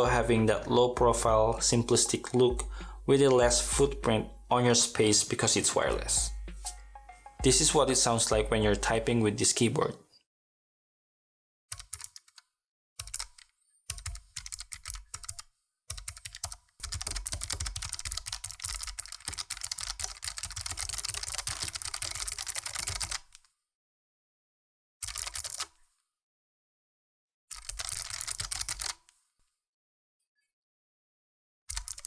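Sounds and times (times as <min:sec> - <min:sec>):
mechanical keyboard typing: 0:11.7 - 0:12.4, 0:13.0 - 0:23.2, 0:27.6 - 0:29.0, 0:31.7 - 0:32.0.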